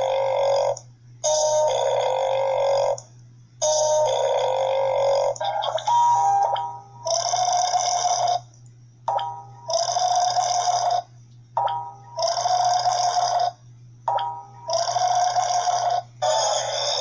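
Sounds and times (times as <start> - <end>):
burping: 12.2 - 13.6, 14.7 - 17.0.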